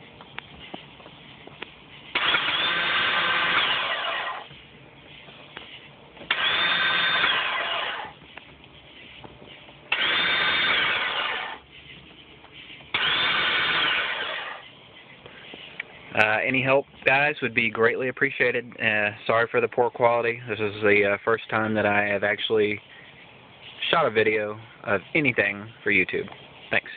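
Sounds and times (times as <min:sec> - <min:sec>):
electric starter motor whining: 0:02.1 - 0:04.5, 0:06.3 - 0:08.2, 0:09.9 - 0:11.6, 0:12.9 - 0:14.7.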